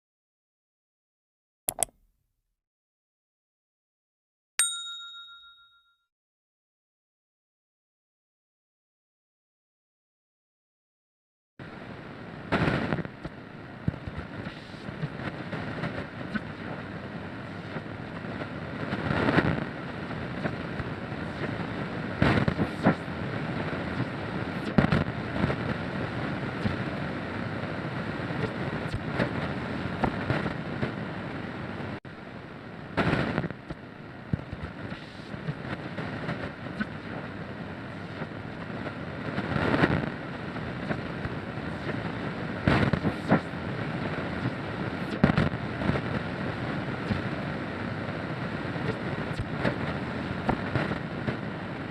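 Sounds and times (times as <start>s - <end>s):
radio static hiss: 11.7s - 32.0s, 32.6s - 51.9s.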